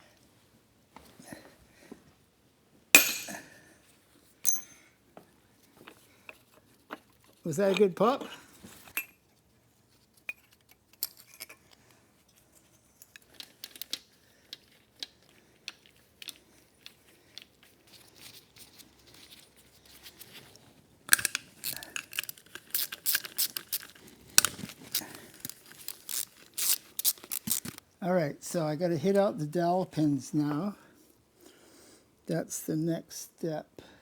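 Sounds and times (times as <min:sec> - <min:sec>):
metal tools clicking and rattling: 0:03.0 - 0:03.5, 0:04.4 - 0:04.8, 0:21.1 - 0:27.8.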